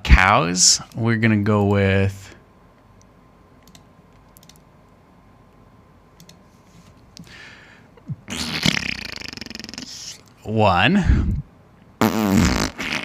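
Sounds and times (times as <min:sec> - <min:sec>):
faint clicks: 0:03.0 - 0:04.6, 0:06.2 - 0:06.4.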